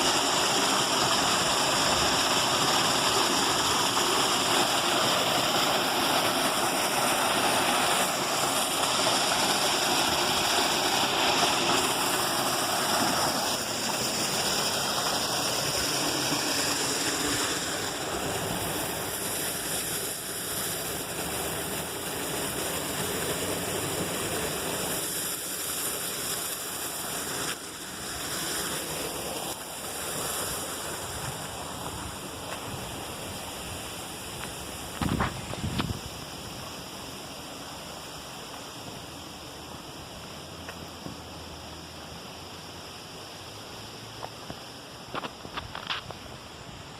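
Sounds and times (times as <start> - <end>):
cascading water rushing: 0.0 - 46.9.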